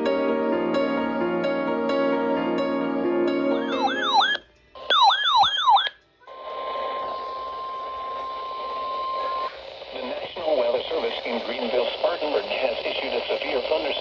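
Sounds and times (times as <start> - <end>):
electronic warbling alarm: 3.6 - 5.9
steady warning alert tone: 3.6 - 5.9
radio hiss: 8.4 - 14.0.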